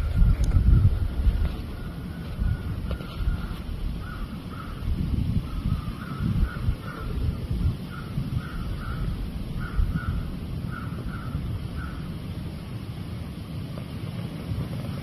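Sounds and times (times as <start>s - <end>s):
wind rumble on microphone: 0.0s - 15.0s
crow cawing: 1.8s - 12.1s.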